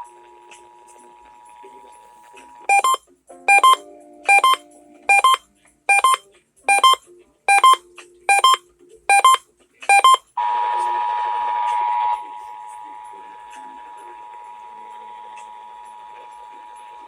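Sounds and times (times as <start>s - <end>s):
paired electronic beeps: 2.7s - 10.2s.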